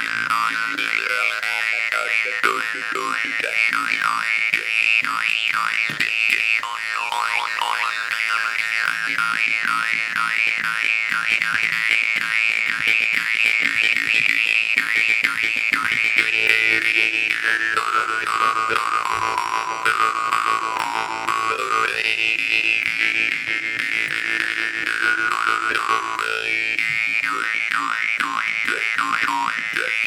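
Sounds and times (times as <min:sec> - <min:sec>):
jaw harp twanging: 0:00.0 - 0:11.3.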